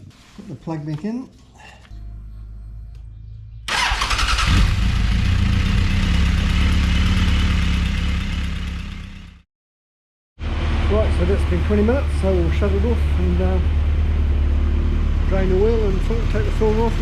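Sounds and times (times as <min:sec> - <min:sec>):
motorcycle engine starting and idling: 0:03.7 - 0:09.4, 0:10.4 - 0:17.0.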